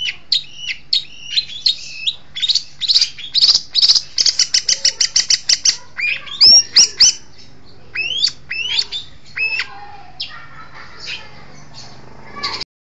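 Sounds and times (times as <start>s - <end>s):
bird singing whistled notes: 0.0s - 10.3s.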